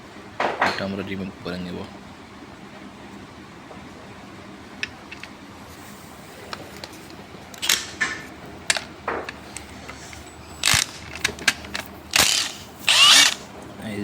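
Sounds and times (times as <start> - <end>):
socket wrench clicking on nut: 10.6 - 13.4.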